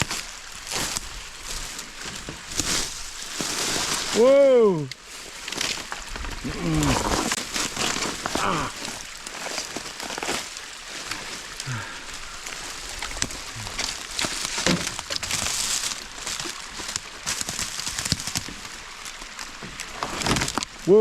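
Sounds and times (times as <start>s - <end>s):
crunching footsteps on rock: 0.0s - 4.3s, 5.3s - 18.8s
twigs crackling: 0.0s - 21.0s
scrapes on rock: 5.4s - 11.5s
person grunting: 6.4s - 7.3s, 8.3s - 8.9s, 11.6s - 12.0s.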